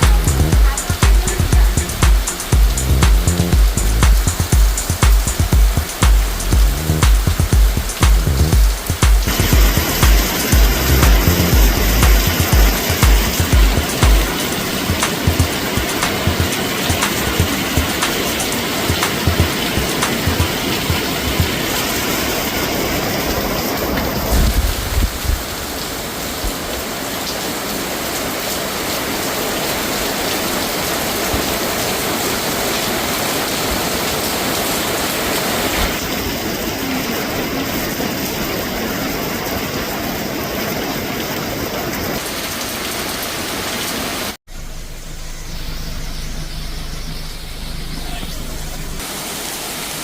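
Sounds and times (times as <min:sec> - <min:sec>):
low thumps: 0:00.0 - 0:18.0
road noise: 0:00.0 - 0:25.0
rain falling on a car: 0:00.0 - 0:44.4, 0:47.9 - 0:50.0.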